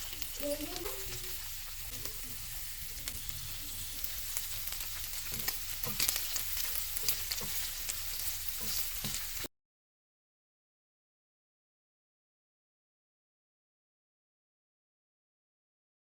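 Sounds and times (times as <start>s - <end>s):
food sizzling in a pan: 0.0s - 9.5s
utensil clicking and scraping: 3.0s - 9.3s.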